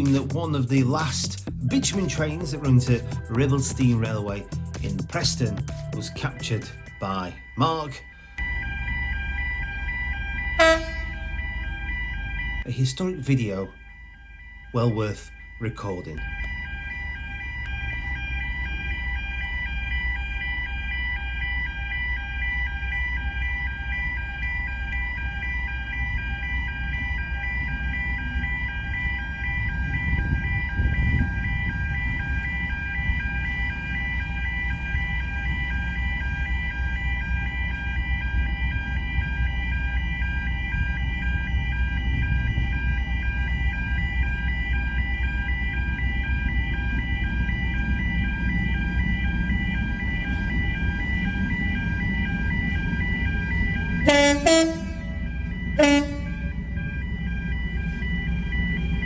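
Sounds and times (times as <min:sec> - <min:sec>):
diesel locomotive rumble: 0:00.0 - 0:59.0
level crossing warning alarm: 0:00.0 - 0:59.0
locomotive horn blasts: 0:10.4 - 0:11.9, 0:54.0 - 0:57.0.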